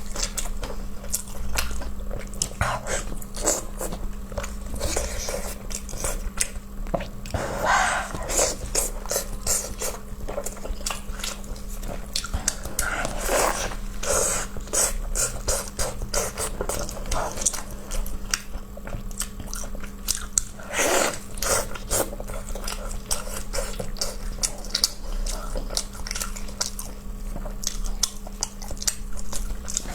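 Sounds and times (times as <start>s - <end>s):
person chewing with mouth clicks: 0.0s - 29.9s.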